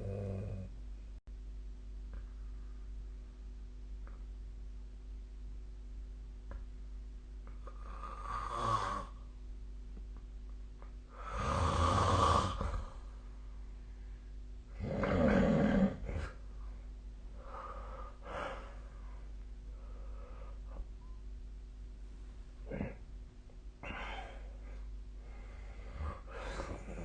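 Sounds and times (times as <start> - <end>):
person snoring: 0.0 - 0.7, 7.6 - 9.2, 11.1 - 13.1, 14.7 - 16.4, 25.3 - 27.0
soft breaths: 16.0 - 21.3, 23.8 - 27.0.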